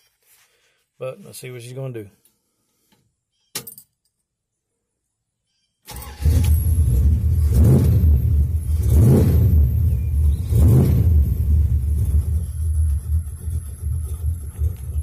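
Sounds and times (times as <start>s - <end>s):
engine starting: 5.9s - 8.1s
engine revving loudly: 6.0s - 15.0s.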